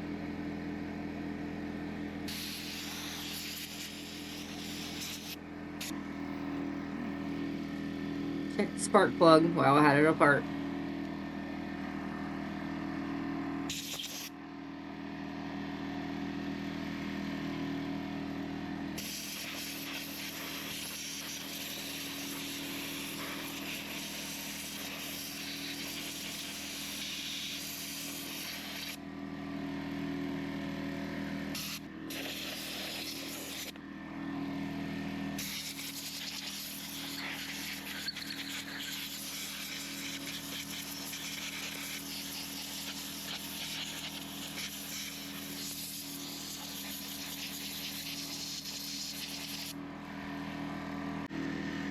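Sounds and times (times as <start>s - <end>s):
steady low hum: 0.0s - 51.9s
compressed air hissing: 2.3s - 6.0s, 13.7s - 14.3s, 19.0s - 29.0s, 31.6s - 33.7s, 35.4s - 49.7s.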